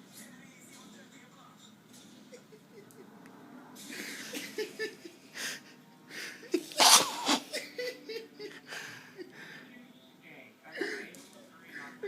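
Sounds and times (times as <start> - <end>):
loud sneeze: 6.7 - 7.6.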